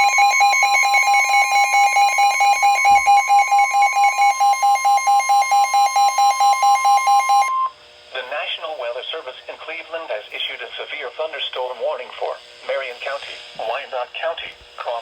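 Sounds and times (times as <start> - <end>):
rapid pulsing electronic beeps: 0.0 - 7.7
steady loud alarm tone: 0.0 - 7.8.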